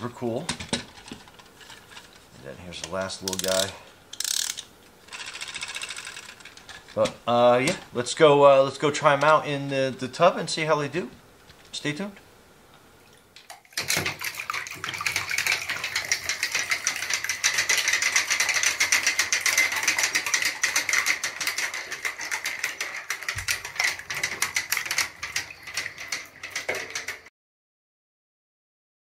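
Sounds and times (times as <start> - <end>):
clockwork toy clicking rattle: 4.2 - 6.6, 15.4 - 27.3.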